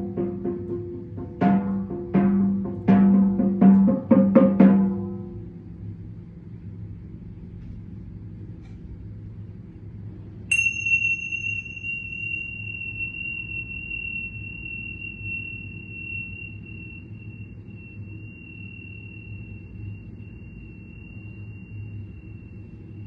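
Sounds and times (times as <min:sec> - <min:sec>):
low hum: 0:00.0 - 0:23.0
high ringing tone: 0:10.5 - 0:23.0.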